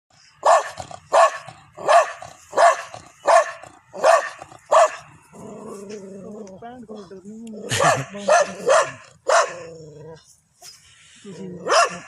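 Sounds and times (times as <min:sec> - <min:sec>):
dog barking loudly: 0:00.4 - 0:05.1, 0:07.7 - 0:09.7, 0:11.6 - 0:12.0.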